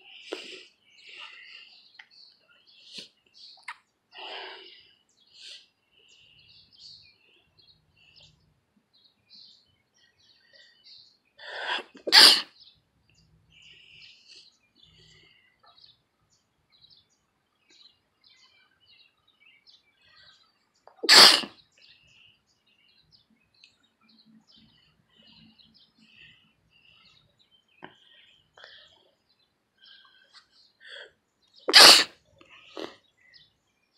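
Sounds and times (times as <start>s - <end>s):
person sneezing loudly: 11.6s - 12.5s, 21.0s - 21.5s, 31.7s - 32.2s.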